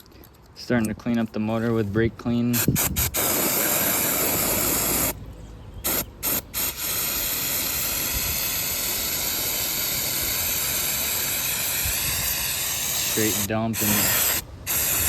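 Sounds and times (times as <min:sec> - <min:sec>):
aerosol can spraying: 0:02.6 - 0:05.2, 0:05.9 - 0:15.0.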